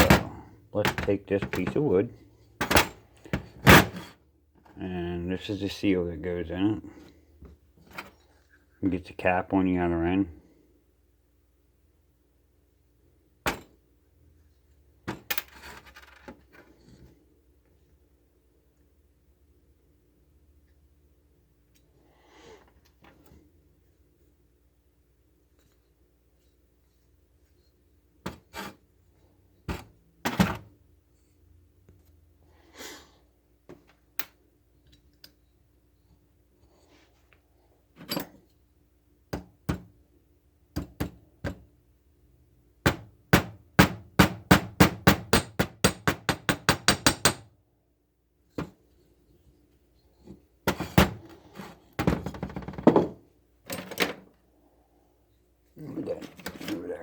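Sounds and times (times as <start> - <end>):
parts clattering: 0.0 - 1.9, 50.2 - 54.4
tools knocking on workbench: 52.0 - 53.2.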